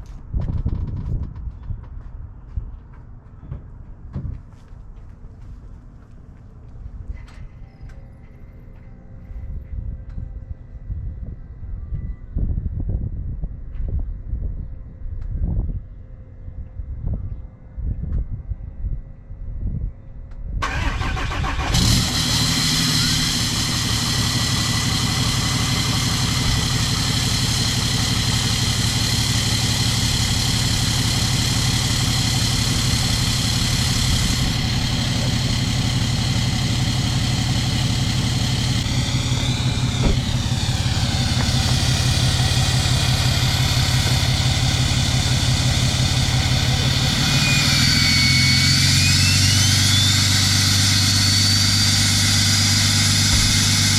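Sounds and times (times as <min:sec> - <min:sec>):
diesel engine starting and idling: 0:20.6 - 0:53.9.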